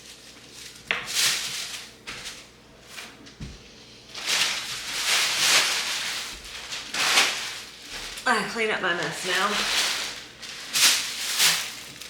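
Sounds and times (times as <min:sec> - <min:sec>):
packaging and clothes rustling: 0:00.0 - 0:03.4, 0:04.1 - 0:12.0.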